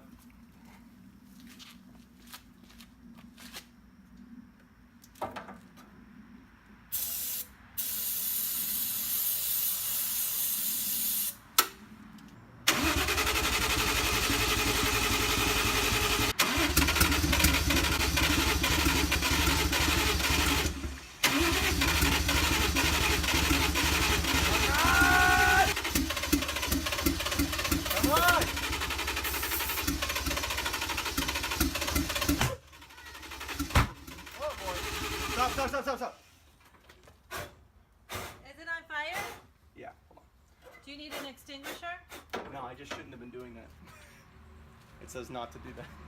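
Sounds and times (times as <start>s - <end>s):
engine cranking and sputtering: 12.7s - 35.9s.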